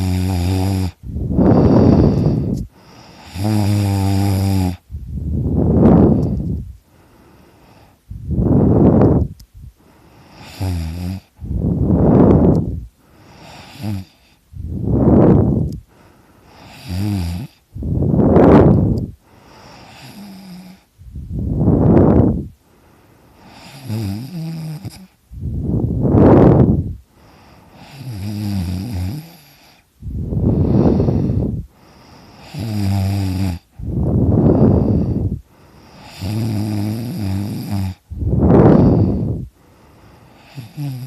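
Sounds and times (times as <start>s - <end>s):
person snoring loudly: 0.0s - 4.8s, 10.4s - 12.6s, 13.4s - 15.5s, 16.6s - 19.0s, 23.5s - 25.1s, 27.8s - 29.6s, 32.4s - 35.4s, 36.0s - 39.5s, 40.4s - 41.0s
soft pitched breath: 0.9s - 4.1s, 4.7s - 23.9s, 24.8s - 28.2s, 29.4s - 32.9s, 33.6s - 36.4s, 38.0s - 40.9s.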